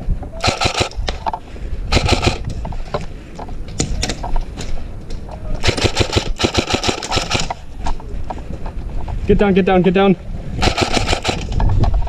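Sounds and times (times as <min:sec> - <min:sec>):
airsoft single shots: 0:00.4 - 0:01.0, 0:10.6 - 0:11.6
airsoft guns firing bursts: 0:00.4 - 0:01.2, 0:01.9 - 0:02.5, 0:05.6 - 0:07.6, 0:10.6 - 0:11.6.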